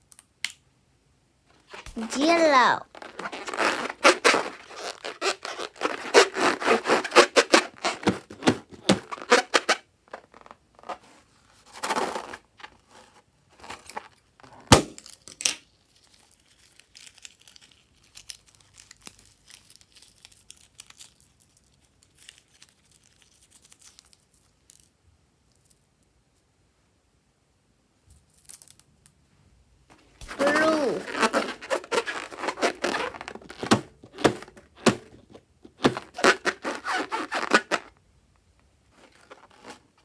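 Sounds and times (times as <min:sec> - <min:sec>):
slime crinkling and crackling: 0:15.9 - 0:24.8, 0:30.2 - 0:35.0.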